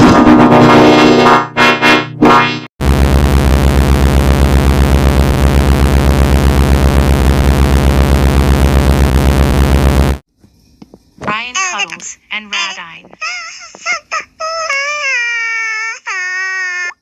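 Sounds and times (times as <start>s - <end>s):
distorted electronic noise: 0.0s - 10.2s
pulsing low buzz: 0.0s - 10.2s.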